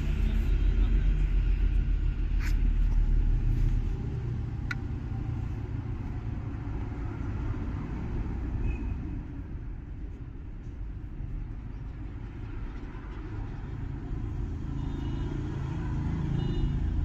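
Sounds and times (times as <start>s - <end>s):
diesel engine running: 0.0s - 8.4s.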